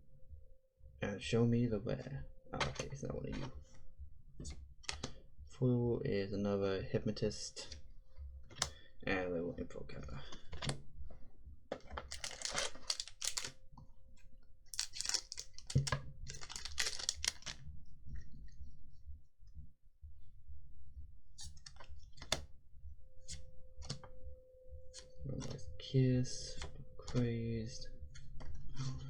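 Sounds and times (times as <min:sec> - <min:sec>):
cards clicking and snapping: 0:12.1 - 0:13.5, 0:14.8 - 0:17.6.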